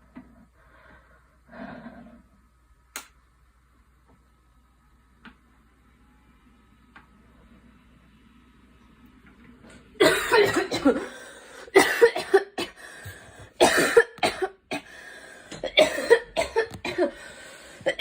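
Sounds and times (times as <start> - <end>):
girl coughing: 10.0 - 12.8, 13.6 - 14.9, 15.5 - 17.2.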